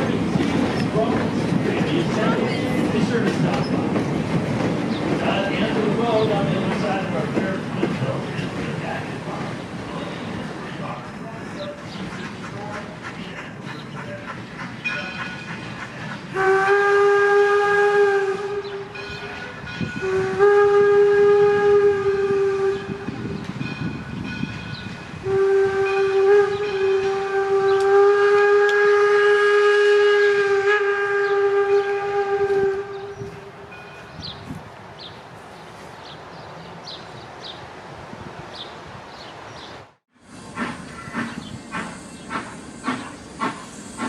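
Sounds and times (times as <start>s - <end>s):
moving train rumble: 0.0s - 44.0s
steam whistle blasts: 16.3s - 23.2s, 25.2s - 33.4s.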